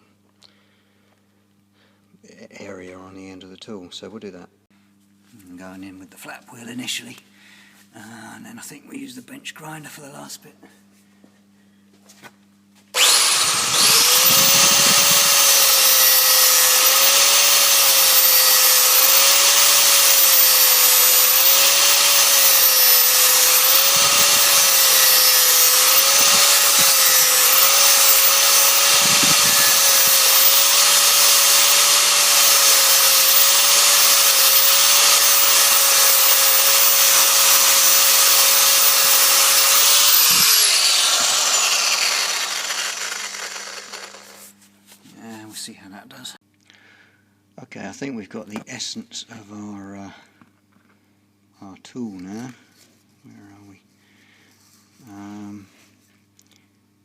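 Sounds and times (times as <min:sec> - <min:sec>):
power tool flap wheel grinding: 0:13.0 - 0:44.5.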